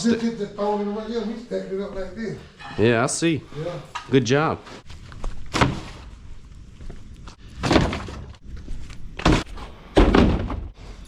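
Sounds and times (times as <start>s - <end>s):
drywall pieces thudding onto debris: 7.6s - 8.4s, 9.2s - 10.7s.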